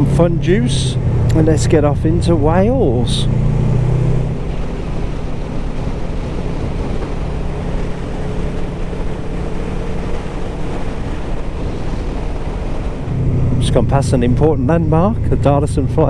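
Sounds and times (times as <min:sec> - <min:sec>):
motorcycle engine running: 0:00.0 - 0:16.0
wind on microphone: 0:00.0 - 0:16.0.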